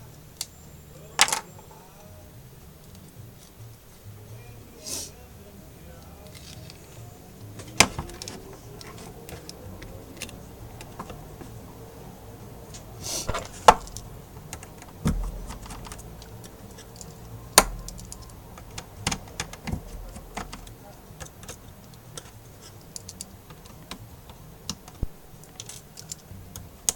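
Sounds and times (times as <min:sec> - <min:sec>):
small tools clicking on a surface: 0:24.7 - 0:26.9.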